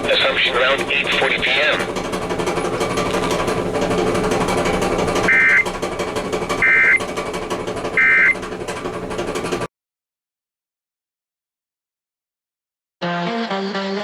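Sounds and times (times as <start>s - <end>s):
two-tone data burst warble: 5.3s - 5.6s, 6.6s - 7.0s, 8.0s - 8.4s.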